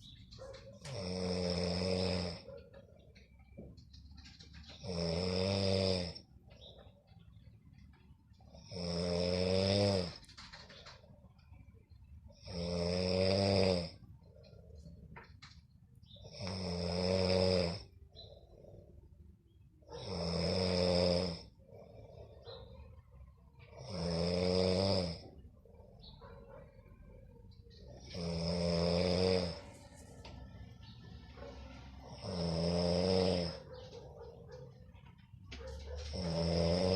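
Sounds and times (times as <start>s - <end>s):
person snoring: 0.9s - 2.4s, 4.8s - 6.2s, 8.6s - 10.2s, 12.4s - 14.0s, 16.3s - 17.8s, 20.0s - 22.2s, 23.7s - 25.2s, 28.1s - 29.7s, 32.2s - 33.6s, 36.1s - 36.9s.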